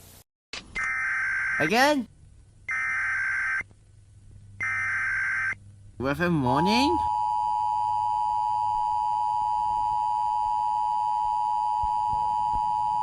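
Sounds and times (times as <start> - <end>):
two-tone alarm: 0.8 - 1.7, 2.7 - 3.6, 4.6 - 5.6.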